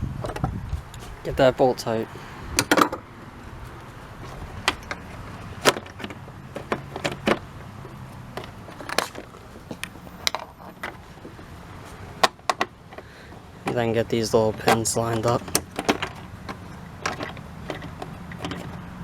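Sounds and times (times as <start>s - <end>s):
hand tool clicks and knocks: 2.6s - 3.0s, 4.2s - 11.5s, 12.2s - 18.9s.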